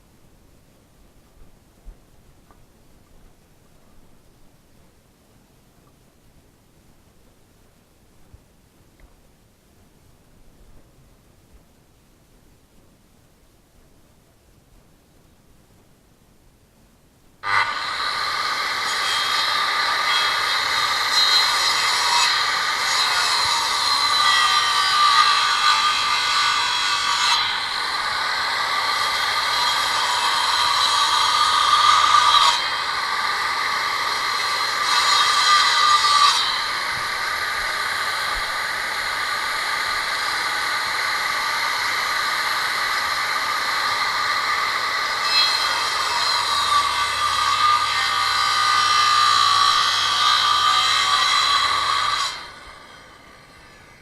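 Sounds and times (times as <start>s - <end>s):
angle grinder sawing wood: 17.4s - 54.0s.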